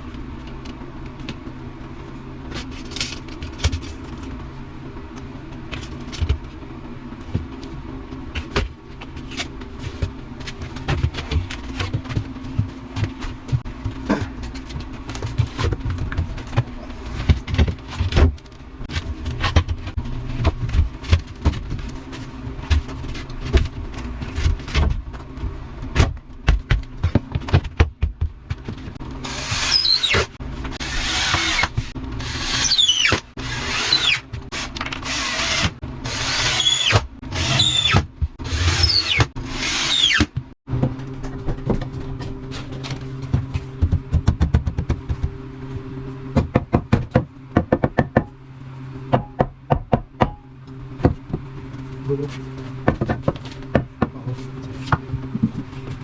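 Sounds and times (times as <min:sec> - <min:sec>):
power drill whining: 0:29.2 - 0:40.3.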